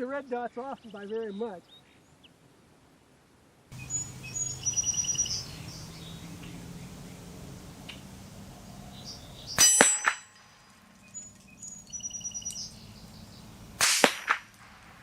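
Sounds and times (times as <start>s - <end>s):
birds chirping: 0.0s - 2.4s, 3.7s - 15.0s
bullet ringing on steel target: 9.6s - 10.7s, 13.8s - 14.5s
rifle shots: 13.8s - 15.0s.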